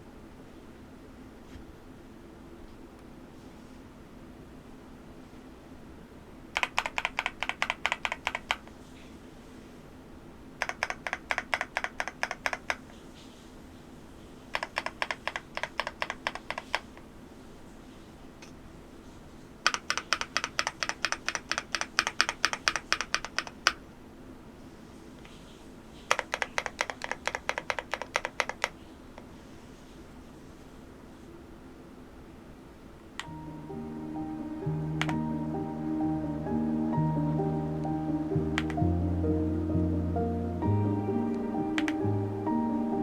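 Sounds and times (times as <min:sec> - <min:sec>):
mechanical keyboard keys clacking: 0:06.6 - 0:08.7, 0:10.6 - 0:12.9, 0:14.5 - 0:17.0, 0:19.6 - 0:23.8, 0:26.1 - 0:28.8, 0:35.0 - 0:35.4, 0:38.6 - 0:38.8, 0:41.7 - 0:42.0.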